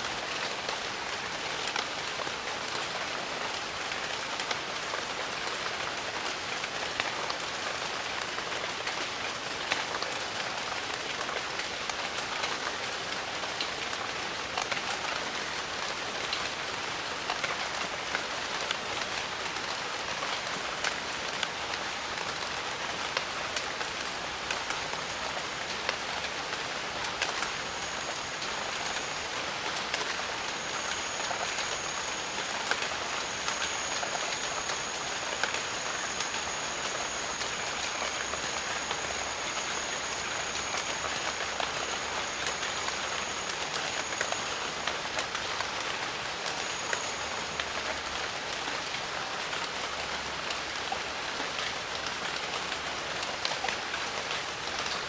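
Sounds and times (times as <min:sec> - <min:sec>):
steady rain with ticking drops: 0:00.0 - 0:55.0
thin high tone: 0:16.0 - 0:48.1.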